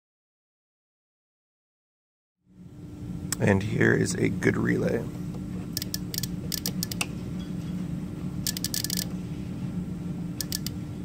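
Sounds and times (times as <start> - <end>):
low electrical hum: 2.5 - 11.0
rapid small mechanical clicks: 5.8 - 7.0, 8.4 - 9.1, 10.4 - 10.8.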